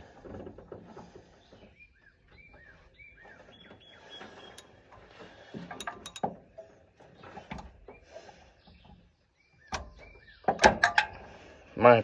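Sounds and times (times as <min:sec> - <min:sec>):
hand tools clicking on metal: 0:05.7 - 0:06.3.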